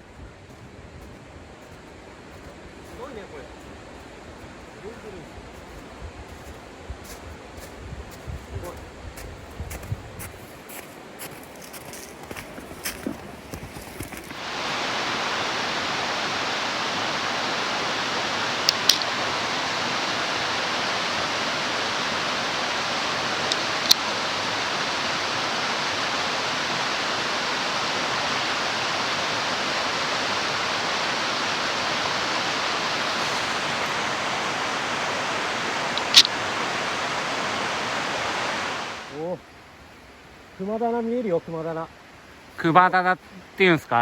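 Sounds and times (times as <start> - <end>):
stream rushing over rocks: 10.9 - 39.4
sharp high clicks: 18.6 - 19.1, 35.9 - 36.4.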